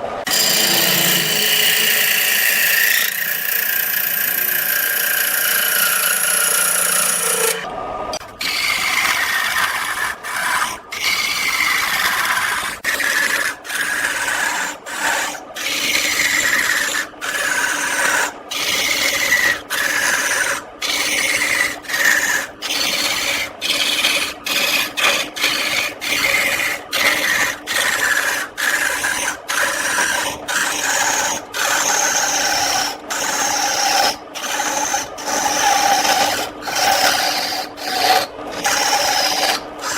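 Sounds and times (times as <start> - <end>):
tool scraping wood on lathe: 0.0 - 39.9
lathe running: 0.2 - 39.9.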